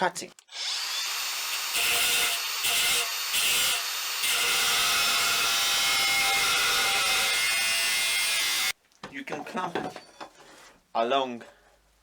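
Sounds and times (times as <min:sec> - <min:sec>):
angle grinder cutting steel: 0:00.5 - 0:08.7.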